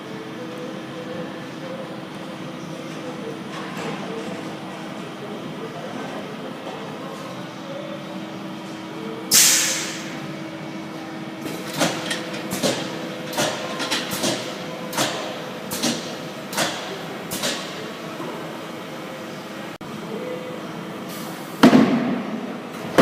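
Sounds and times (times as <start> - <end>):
loud sudden hiss: 9.3 - 10.2
welding hisses and clacks: 9.3 - 10.2, 11.5 - 17.8.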